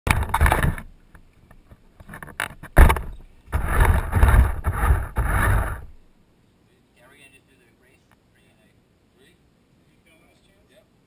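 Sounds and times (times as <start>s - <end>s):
sharp knock: 2.6s - 6.0s
radio-controlled car rumbling: 2.7s - 6.0s.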